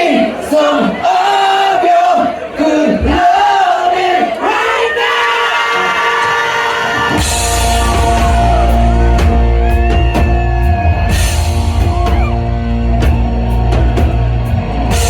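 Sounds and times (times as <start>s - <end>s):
crowd cheering: 0.0s - 15.0s
live rock band playing: 7.0s - 15.0s
drum kit with cymbal crashes: 7.1s - 15.0s
heavy bass: 7.2s - 15.0s.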